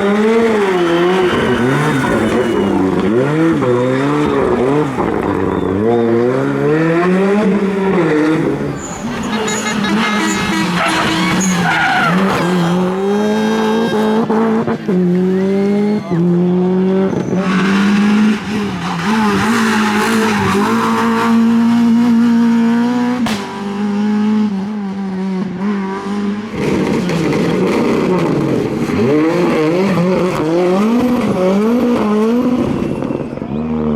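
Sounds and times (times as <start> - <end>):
tyres skidding: 0.0 - 24.0, 25.5 - 33.6
rally car engine revving: 0.0 - 33.9
sharp crack: 23.2 - 23.7.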